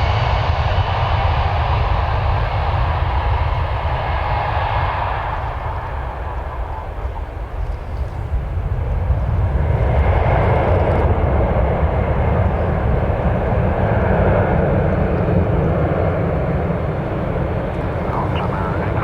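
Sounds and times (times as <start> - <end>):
jet engines rumbling at takeoff: 0.0 - 19.0
faint high whine: 17.8 - 19.0.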